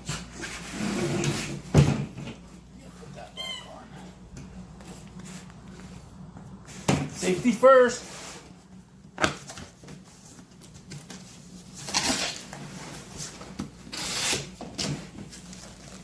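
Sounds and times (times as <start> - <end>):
packaging rustling and scraping: 10.1 - 16.0.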